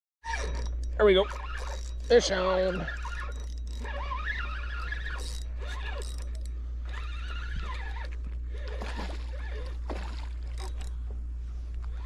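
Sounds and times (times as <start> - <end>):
steady low rumble: 6.3 - 6.9, 7.6 - 12.0.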